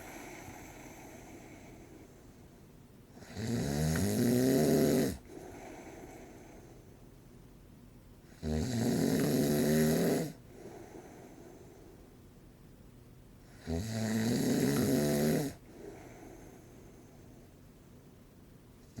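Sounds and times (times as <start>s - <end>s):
soft breathing: 0.0s - 2.7s, 5.2s - 7.1s, 10.4s - 12.2s, 15.6s - 17.7s
man snoring: 3.2s - 5.3s, 8.4s - 10.4s, 13.6s - 16.1s.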